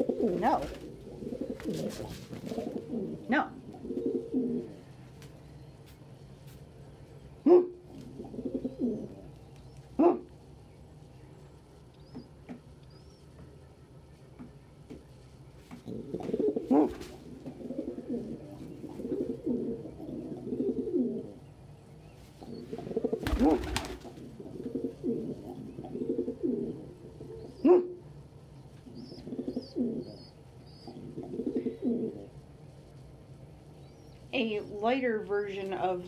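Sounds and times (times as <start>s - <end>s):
pigeon rough pulsing coo: 0.0s - 5.0s, 7.4s - 10.3s, 15.7s - 21.6s, 22.3s - 28.2s, 28.8s - 32.5s.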